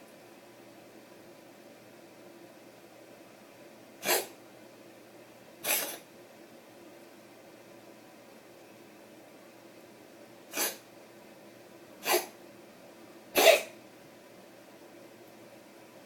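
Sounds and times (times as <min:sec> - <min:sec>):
breathy coughs: 0:05.6 - 0:06.0, 0:12.0 - 0:12.3, 0:13.4 - 0:13.8.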